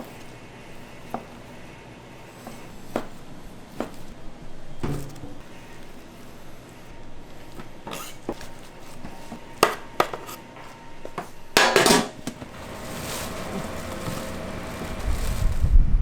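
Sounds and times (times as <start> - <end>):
hard objects knocking and clattering: 7.6 - 10.4, 11.0 - 15.3.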